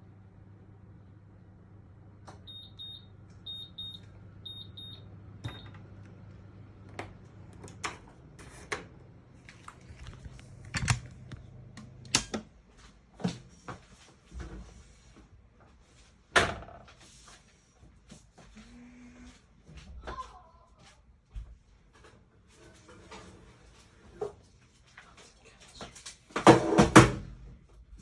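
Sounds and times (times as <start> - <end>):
low steady hum: 0.0 - 12.8
oven high beeps: 2.4 - 5.8.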